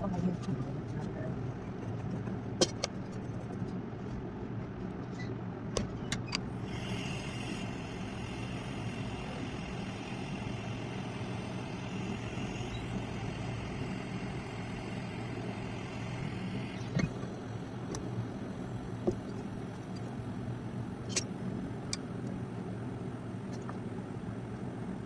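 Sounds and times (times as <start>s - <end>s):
low mechanical hum: 0.0s - 25.0s
high hiss: 6.5s - 18.2s.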